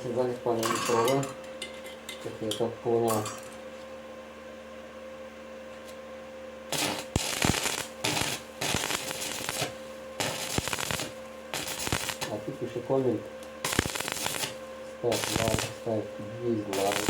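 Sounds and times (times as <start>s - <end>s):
steady low hum: 0.0s - 17.0s
welding arc crackling: 6.7s - 12.5s, 13.6s - 16.0s, 16.6s - 17.0s.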